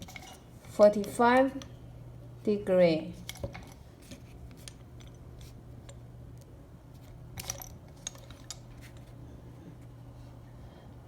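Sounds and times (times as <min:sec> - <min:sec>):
metal hose fittings clinking: 0:00.0 - 0:01.1, 0:07.4 - 0:09.1
steady low hum: 0:00.0 - 0:11.0.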